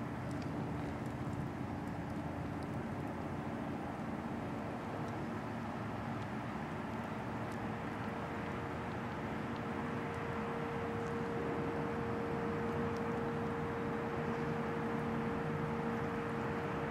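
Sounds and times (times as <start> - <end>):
distant warning sirens: 7.0 - 16.9.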